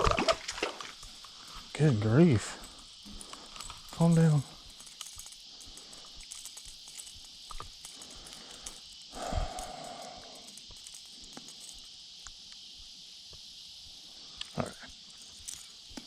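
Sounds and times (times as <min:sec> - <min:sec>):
crickets and insects chirping: 0:00.0 - 0:16.0.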